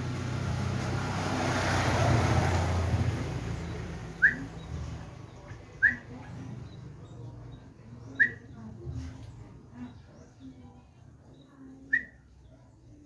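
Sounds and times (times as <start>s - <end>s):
vehicle passing by: 0.0s - 8.2s
bird chirping: 3.5s - 9.0s, 9.8s - 13.0s.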